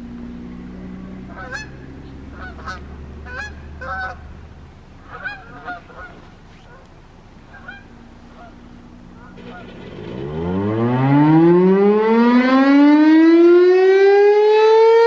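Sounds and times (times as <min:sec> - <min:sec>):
low steady hum: 0:00.0 - 0:12.5
birds calling: 0:00.8 - 0:10.4.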